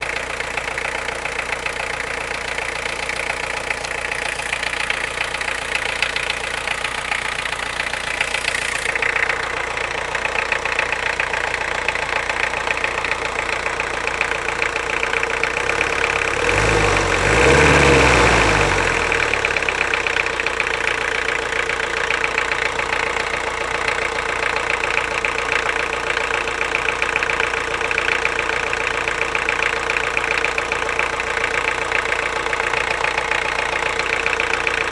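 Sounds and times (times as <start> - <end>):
car engine idling and knocking: 0.0 - 34.9
engine revving: 15.3 - 20.8.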